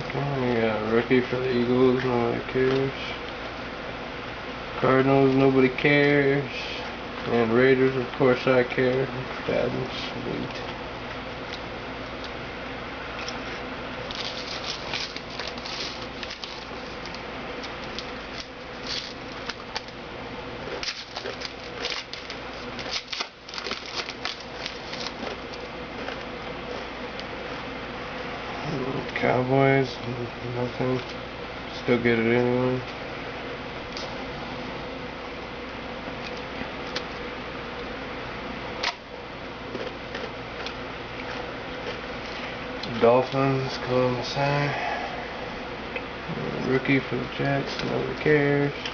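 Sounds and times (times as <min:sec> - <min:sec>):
steady low hum: 0:00.0 - 0:48.9
trading cards rustling and clicking: 0:14.1 - 0:20.0, 0:20.7 - 0:26.2.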